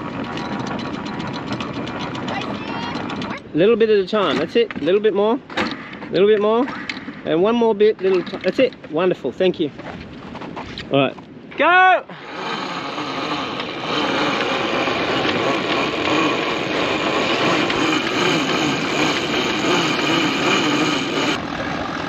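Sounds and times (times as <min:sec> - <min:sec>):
boat engine running: 0:00.0 - 0:09.5, 0:12.1 - 0:22.0
rushing noise aboard sailboat: 0:00.0 - 0:22.0.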